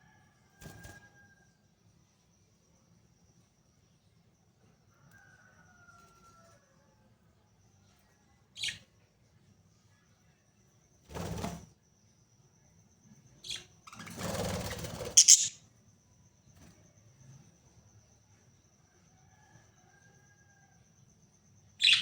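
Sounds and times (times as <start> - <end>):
budgerigars chirping: 15.2 - 15.6, 21.8 - 22.0.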